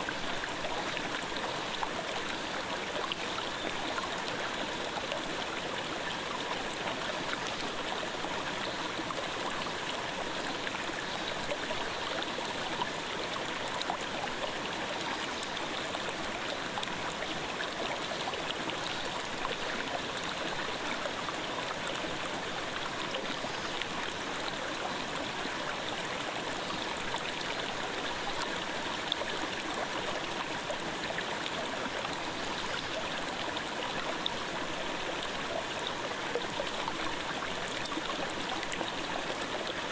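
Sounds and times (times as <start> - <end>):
stream babbling: 0.0 - 39.9.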